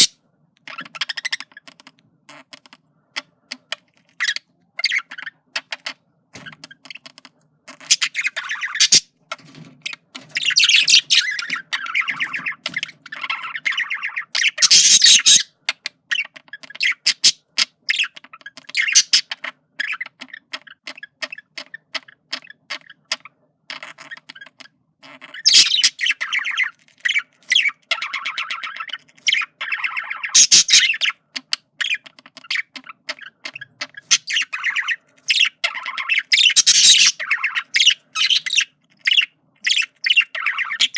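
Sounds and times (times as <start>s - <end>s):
budgerigar warbling: 7.9s - 9.0s, 10.4s - 15.5s, 25.3s - 31.2s, 31.8s - 40.9s.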